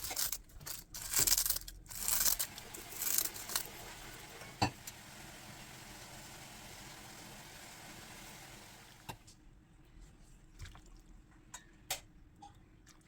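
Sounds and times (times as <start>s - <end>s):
tap water running: 1.9s - 9.3s.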